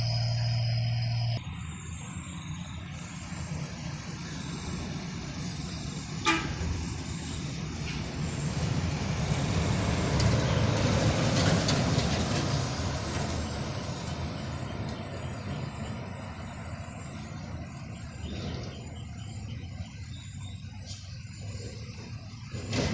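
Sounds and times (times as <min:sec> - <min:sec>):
heavy vehicle passing: 0:00.0 - 0:22.9
vehicle horn toot: 0:06.1 - 0:07.0.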